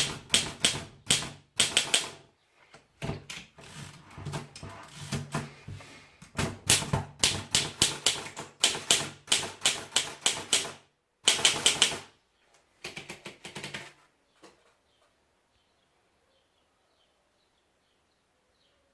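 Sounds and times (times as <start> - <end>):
typewriter keystrokes: 0.0 - 2.2, 6.5 - 12.1.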